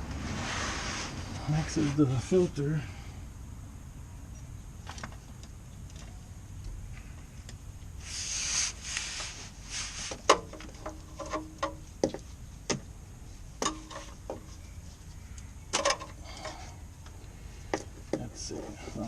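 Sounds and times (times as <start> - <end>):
rustling: 7.0 - 15.6.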